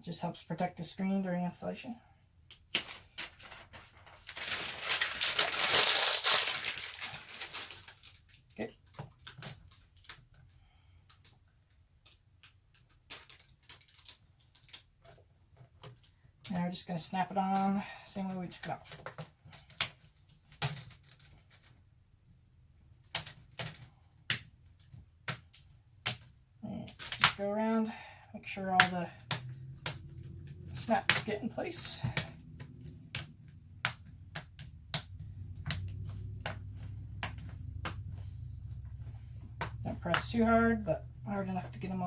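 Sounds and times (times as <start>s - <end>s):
plastic film crinkling: 2.8s - 10.4s, 12.4s - 15.0s.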